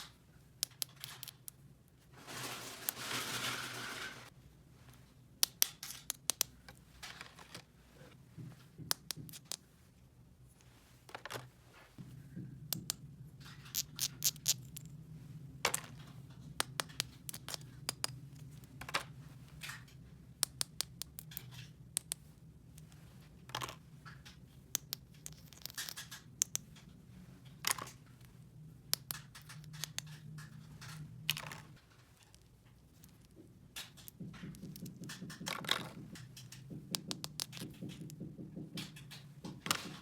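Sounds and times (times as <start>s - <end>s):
plastic toy pieces clicking: 0.6s - 1.6s, 13.7s - 14.8s
packaging rustling: 2.2s - 4.3s.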